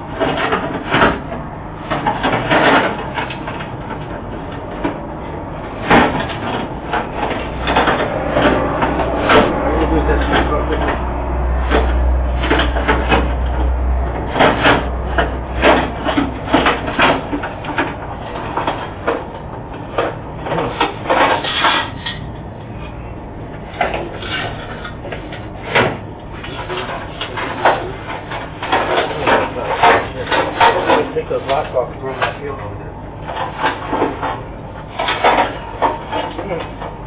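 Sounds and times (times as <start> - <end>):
knocks and clatter on machine: 0.0 - 22.2, 23.6 - 32.6, 33.2 - 37.0
low hum: 0.0 - 37.0.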